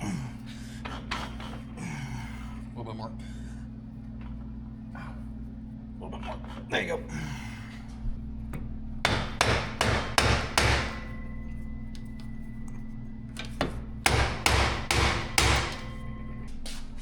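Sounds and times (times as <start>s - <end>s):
hammer striking metal: 9.0s - 11.4s, 13.6s - 16.4s.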